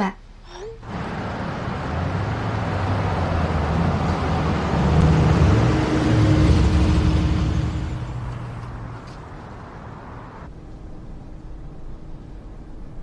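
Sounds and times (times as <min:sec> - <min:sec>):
car engine running: 0:00.8 - 0:10.5
road and traffic noise: 0:00.8 - 0:13.0.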